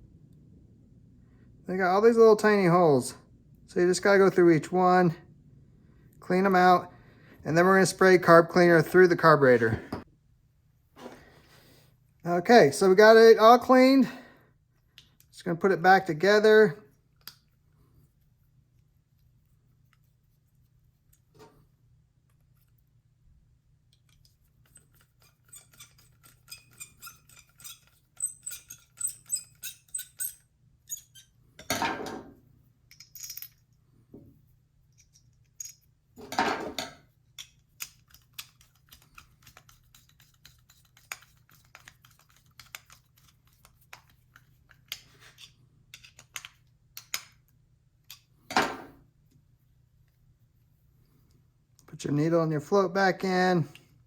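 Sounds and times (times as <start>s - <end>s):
small metal parts clinking: 24.0s - 31.7s, 32.9s - 33.8s, 34.9s - 36.0s.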